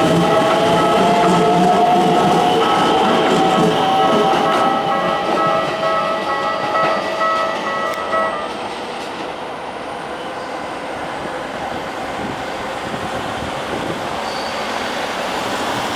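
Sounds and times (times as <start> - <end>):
level crossing warning bell: 0.0 - 9.0
electric train wheel and rail noise: 0.0 - 15.9.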